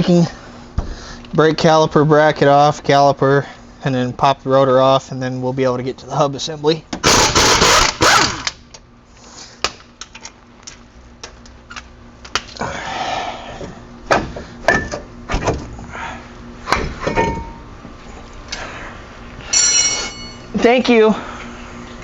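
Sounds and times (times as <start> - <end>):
loud harsh burst: 7.0 - 8.4
metal brake parts knocking and clinking: 17.0 - 17.7, 19.5 - 20.4.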